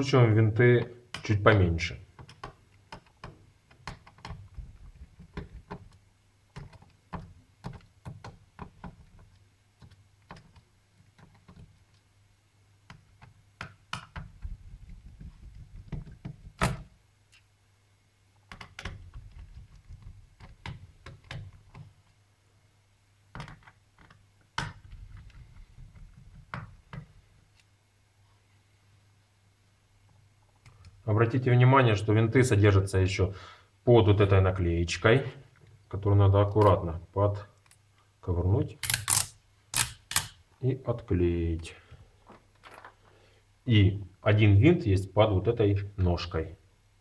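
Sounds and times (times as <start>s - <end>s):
screwdriver undoing small screws: 38.8s - 40.4s.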